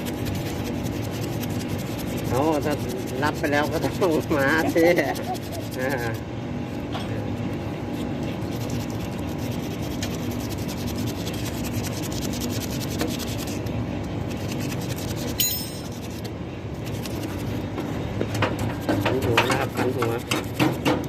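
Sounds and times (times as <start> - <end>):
rapid rasping scrape: 0.0 - 6.2, 7.8 - 17.7, 18.5 - 21.0
metallic ring: 15.3 - 16.0.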